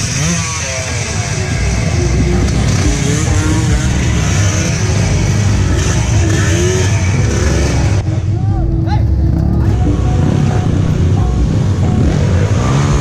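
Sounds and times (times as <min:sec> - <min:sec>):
dirt bike engines revving: 0:00.0 - 0:13.0.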